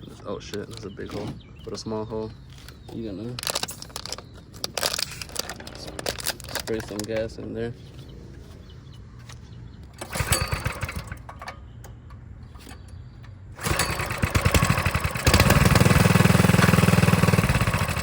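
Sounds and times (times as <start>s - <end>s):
engine pull-start cranking: 3.3s - 7.2s, 10.0s - 11.5s, 13.6s - 18.0s
small engine running: 10.0s - 11.3s, 13.6s - 18.0s.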